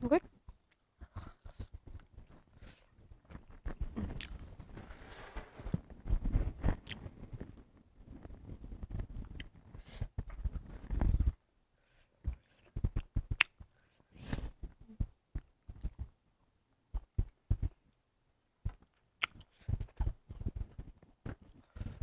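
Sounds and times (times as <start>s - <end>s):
rustling and thudding: 0.3s - 11.4s.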